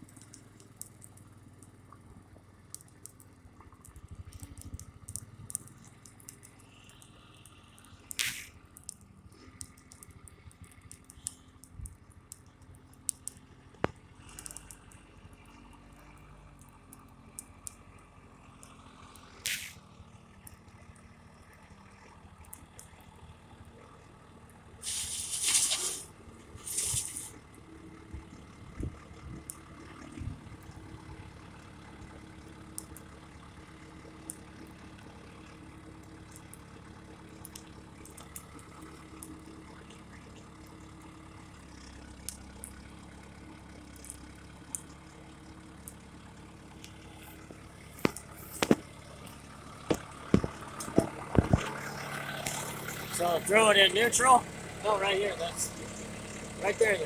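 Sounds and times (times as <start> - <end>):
distant backhoe engine hum: 0.0 - 57.0
loud hisses: 24.8 - 27.3.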